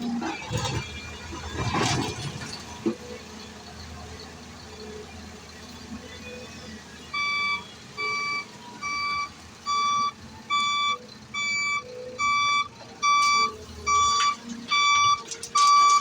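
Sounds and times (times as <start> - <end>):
backup alarm beeping: 7.2 - 16.0.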